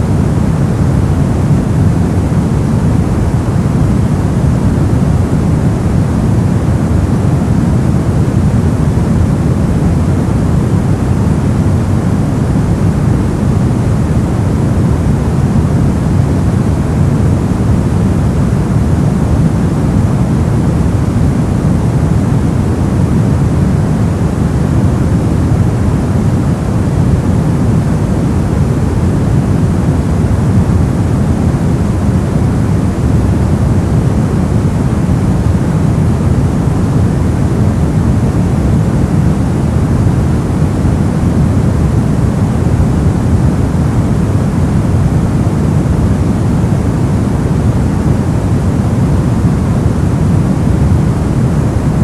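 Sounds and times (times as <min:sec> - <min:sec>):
brown noise: 0:00.0 - 0:52.0.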